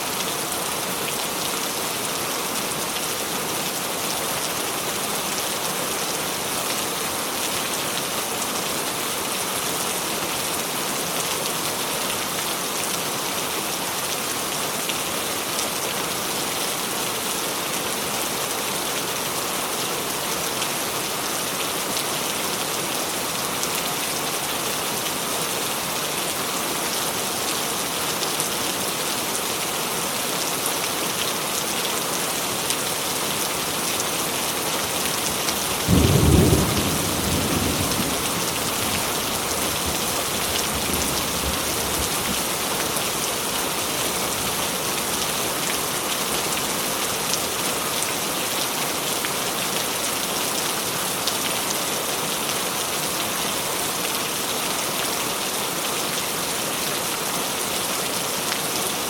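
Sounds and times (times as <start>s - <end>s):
heavy rain: 0.0s - 59.0s
thunderclap rumbling: 35.8s - 42.2s.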